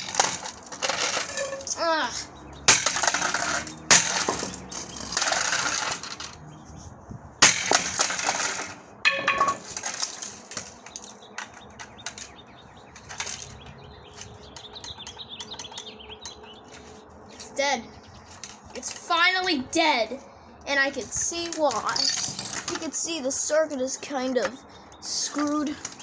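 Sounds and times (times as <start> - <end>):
broken pieces clicking and rattling: 0.0 - 1.8, 2.6 - 6.4, 7.4 - 16.9, 21.0 - 23.0
bat striking plastic: 7.4 - 10.0.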